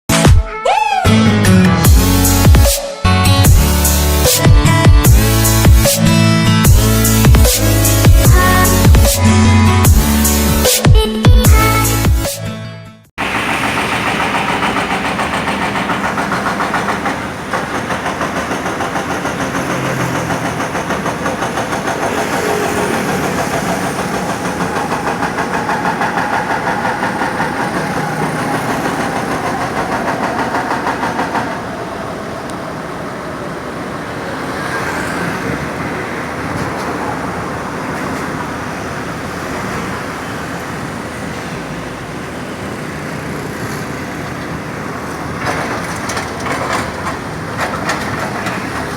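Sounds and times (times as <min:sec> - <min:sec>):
excavator engine running: 0:01.1 - 0:10.8, 0:13.2 - 0:48.9
hydraulic breaker hammering concrete: 0:13.2 - 0:31.7, 0:42.6 - 0:48.9.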